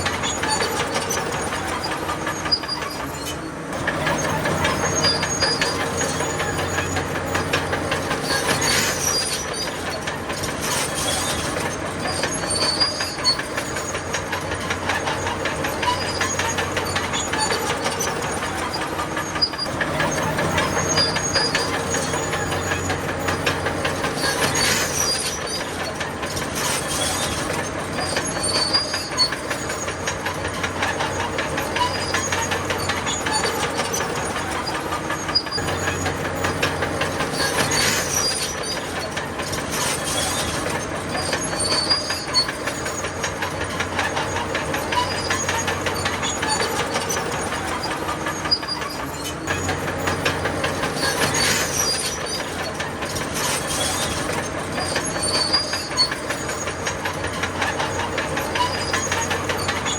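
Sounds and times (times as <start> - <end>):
diesel engine running: 0.0 - 59.9
steel tracks clattering: 0.0 - 59.9
track squealing: 0.0 - 59.9.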